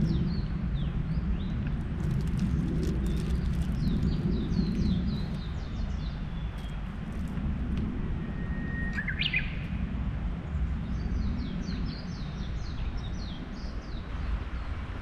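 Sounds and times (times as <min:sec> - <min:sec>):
small birds calling: 0:00.0 - 0:07.2
bird whistle and warbling: 0:08.3 - 0:09.7.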